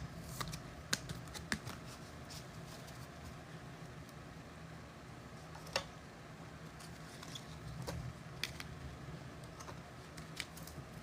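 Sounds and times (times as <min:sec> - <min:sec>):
low steady hum: 0:00.0 - 0:11.0
cards clicking and tapping: 0:00.3 - 0:01.8.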